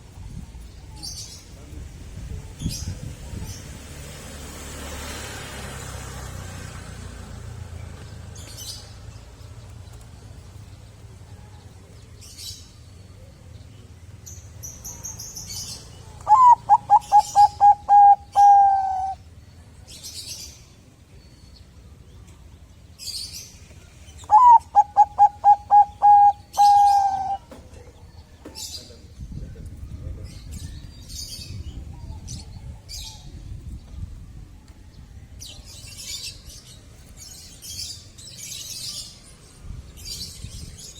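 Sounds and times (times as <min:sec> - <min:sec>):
small birds chirping: 0:00.0 - 0:40.9
dove cooing: 0:16.2 - 0:19.2, 0:24.3 - 0:27.7.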